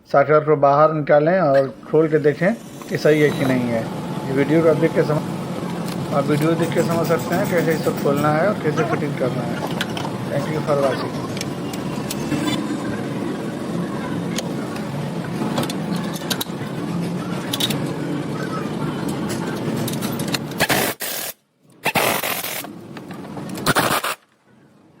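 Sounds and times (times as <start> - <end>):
noisy background: 0.0 - 25.0.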